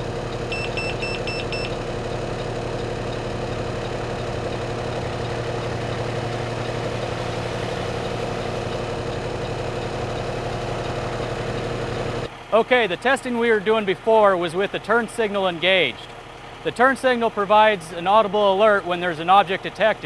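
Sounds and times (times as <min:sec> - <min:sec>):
truck engine idling: 0:00.0 - 0:20.0
short high beeps: 0:00.5 - 0:01.8.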